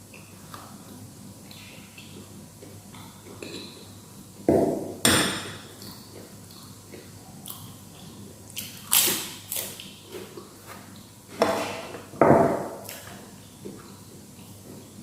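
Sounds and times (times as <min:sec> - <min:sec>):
crunching while eating: 0:05.8 - 0:11.0.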